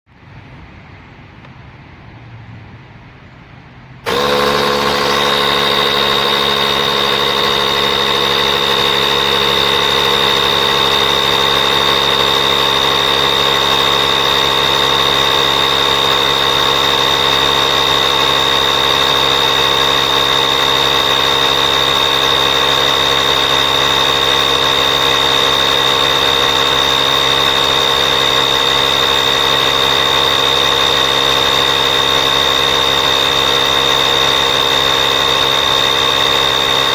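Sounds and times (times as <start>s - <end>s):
air compressor humming: 4.0s - 36.9s.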